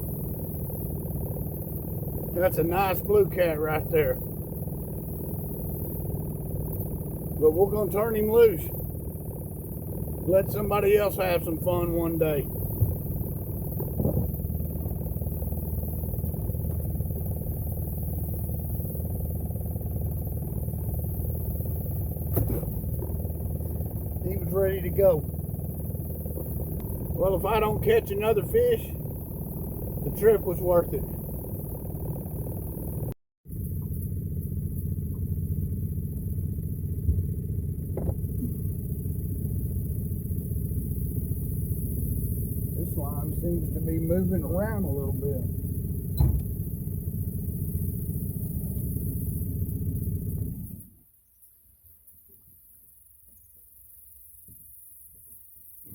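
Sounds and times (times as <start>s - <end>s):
boat motor idling: 0.0s - 50.8s
brief knock: 46.2s - 46.5s.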